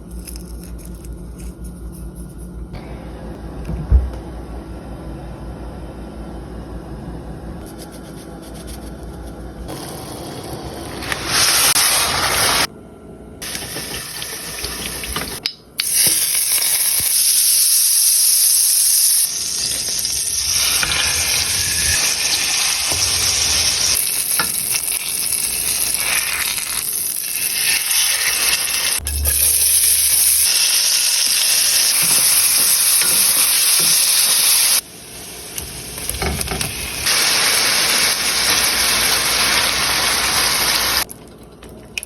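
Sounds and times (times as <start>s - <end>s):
food sizzling in frying pan: 9.7s - 12.7s, 13.4s - 41.1s.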